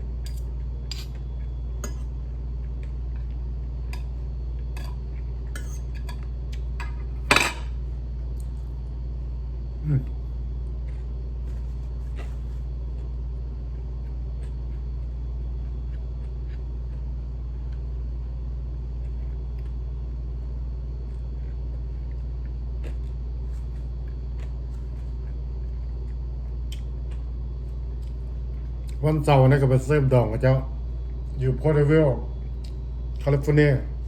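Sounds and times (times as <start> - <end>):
crunchy chewing: 0.0 - 7.2, 10.0 - 29.0, 32.3 - 33.3
low rumbling hum: 0.0 - 34.0.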